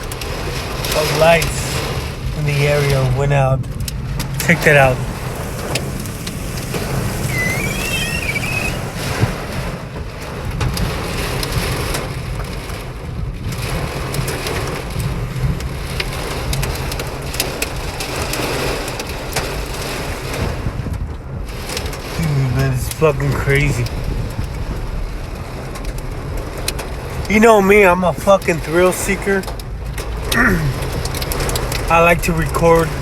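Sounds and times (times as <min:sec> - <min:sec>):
car low rumble: 0:00.0 - 0:33.0
heavy rain on a car: 0:00.0 - 0:33.0
wavering squeak: 0:06.7 - 0:09.3.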